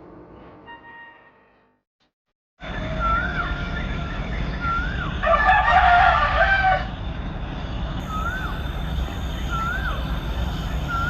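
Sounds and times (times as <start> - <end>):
rooster crowing: 5.2 - 7.0
small bird chirping: 8.0 - 11.0.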